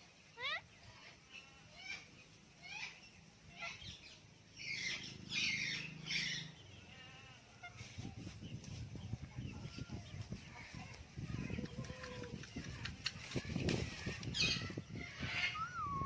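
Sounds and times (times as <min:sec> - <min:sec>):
parrot chirping and screeching: 0:12.5 - 0:15.8.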